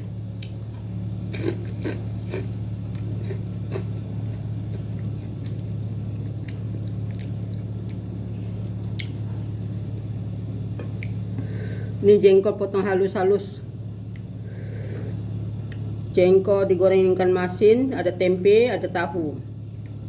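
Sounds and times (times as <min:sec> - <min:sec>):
steady low hum: 0:00.0 - 0:20.0
person chewing food: 0:00.3 - 0:08.2
mouth clicks and smacks: 0:08.9 - 0:09.2.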